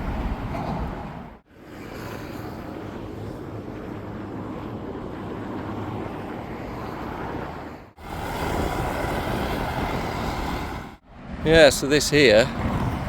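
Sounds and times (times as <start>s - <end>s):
road traffic noise: 5.6s - 13.0s
wind on microphone: 12.2s - 13.0s.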